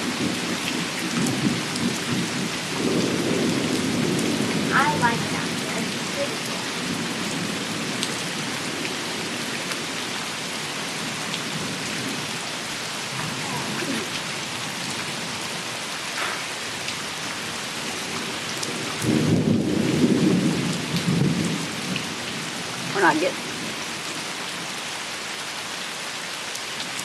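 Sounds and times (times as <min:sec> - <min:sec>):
low rumble of thunder: 0:00.0 - 0:09.9, 0:16.8 - 0:23.8
raindrops ticking close by: 0:00.0 - 0:24.6, 0:26.4 - 0:27.0
heavy rain falling: 0:00.0 - 0:27.0.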